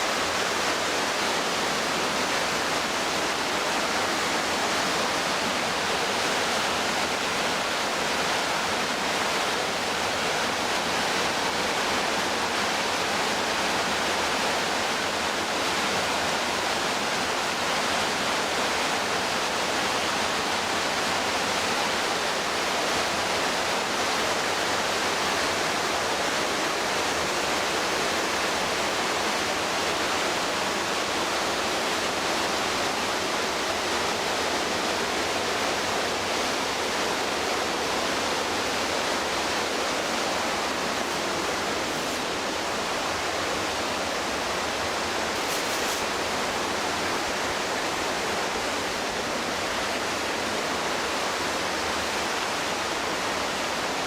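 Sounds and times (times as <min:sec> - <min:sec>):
white water rushing: 0:00.0 - 0:54.0.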